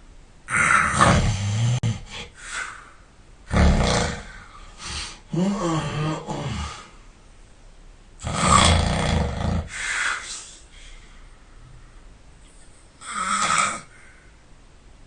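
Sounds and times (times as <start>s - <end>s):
person snoring: 0.5s - 2.9s, 3.5s - 7.0s, 8.2s - 10.5s, 13.0s - 14.2s
groaning breath out: 0.5s - 7.1s.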